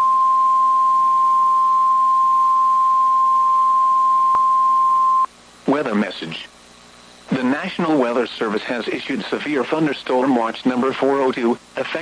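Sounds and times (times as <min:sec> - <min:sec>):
steady electronic alarm tone: 0:00.0 - 0:05.3.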